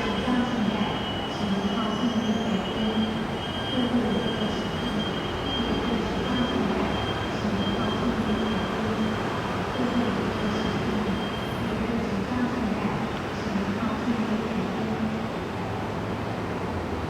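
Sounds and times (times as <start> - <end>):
train rumbling: 0.0 - 1.9.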